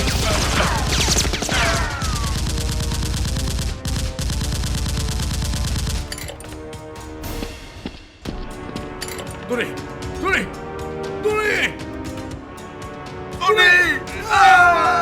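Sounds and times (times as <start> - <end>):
rapid automatic gunfire: 0.0 - 6.1.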